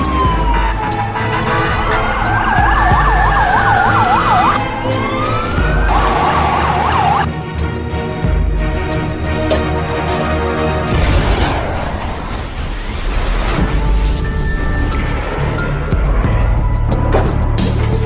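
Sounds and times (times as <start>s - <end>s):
siren sweeping: 0.0s - 7.3s
siren yelp warbling: 0.0s - 7.3s
background music with low beat: 0.0s - 10.1s.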